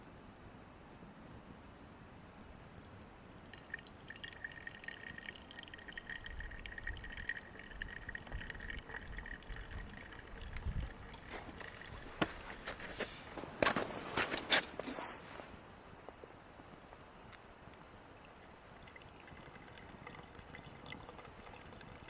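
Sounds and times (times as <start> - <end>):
water pouring in thin stream: 2.8 - 13.4, 17.3 - 22.0.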